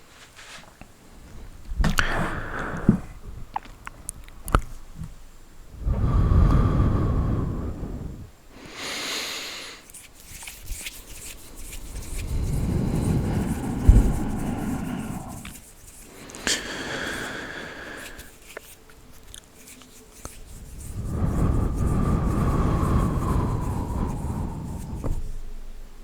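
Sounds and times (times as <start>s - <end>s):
rustling against microphone: 0.0s - 2.0s, 9.8s - 25.8s
hissy swish: 9.8s - 18.6s, 19.7s - 25.4s.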